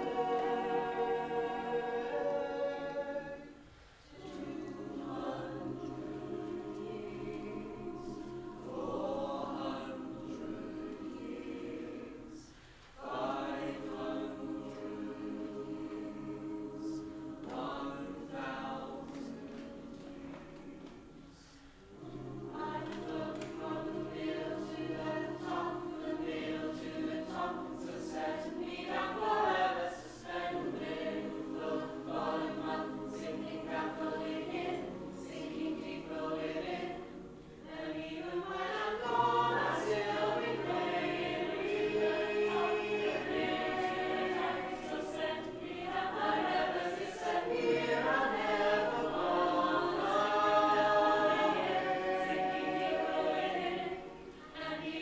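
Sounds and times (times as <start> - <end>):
choir singing in harmony: 0.0 - 55.0.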